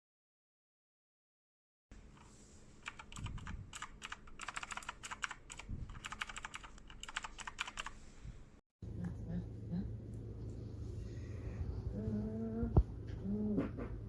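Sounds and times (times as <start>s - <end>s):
fast typing on computer keyboard: 2.8s - 8.0s.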